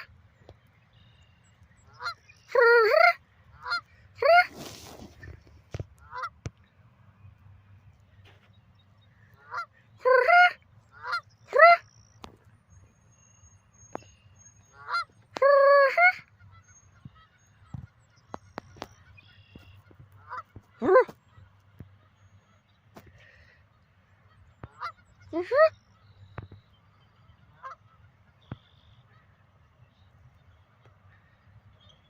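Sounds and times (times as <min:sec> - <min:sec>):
geese honking: 0:01.9 - 0:04.8, 0:06.0 - 0:06.4, 0:09.4 - 0:11.8, 0:14.7 - 0:17.4, 0:18.9 - 0:22.6, 0:24.2 - 0:25.7, 0:27.2 - 0:29.4.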